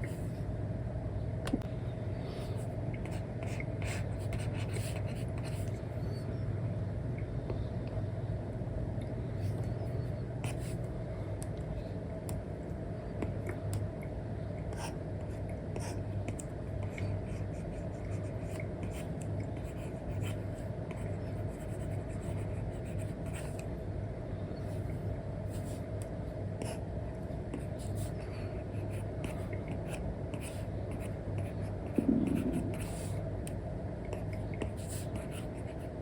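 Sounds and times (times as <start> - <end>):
steady low hum: 0.0 - 36.0
stylus scratching and tapping screen: 31.4 - 33.2.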